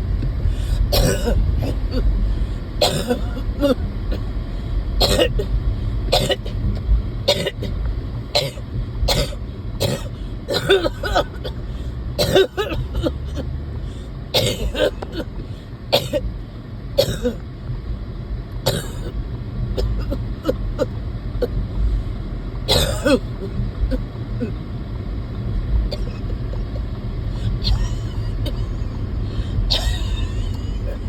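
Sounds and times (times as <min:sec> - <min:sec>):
steady low rumble: 0:00.0 - 0:31.0
person coughing: 0:00.9 - 0:02.0, 0:02.8 - 0:03.8, 0:05.0 - 0:05.5, 0:08.4 - 0:11.6, 0:12.2 - 0:13.2, 0:14.4 - 0:15.2, 0:22.7 - 0:23.5, 0:29.7 - 0:31.0.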